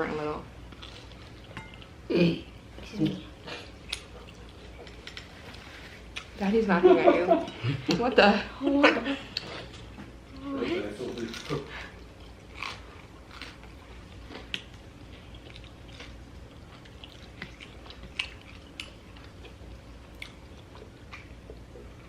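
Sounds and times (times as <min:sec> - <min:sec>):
people chewing crispy crust: 0:00.7 - 0:02.0, 0:09.1 - 0:22.0.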